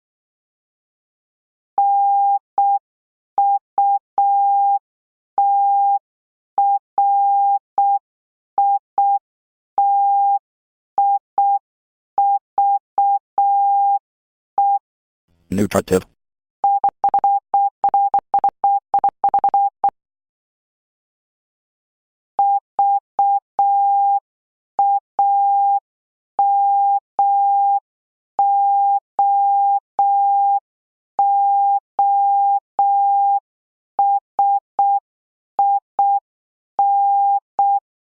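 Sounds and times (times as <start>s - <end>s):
morse code beeps: 16.6s - 19.7s.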